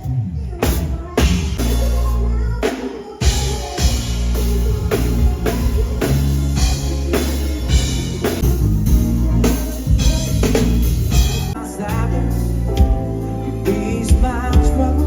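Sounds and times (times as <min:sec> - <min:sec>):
band playing with steady beat: 0:00.0 - 0:15.0.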